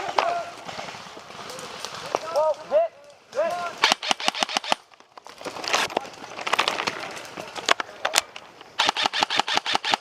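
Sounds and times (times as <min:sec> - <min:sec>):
rustling through brush: 0:00.0 - 0:08.9
twigs cracking: 0:00.0 - 0:09.3
airsoft rifle firing: 0:03.8 - 0:04.8, 0:08.8 - 0:10.0.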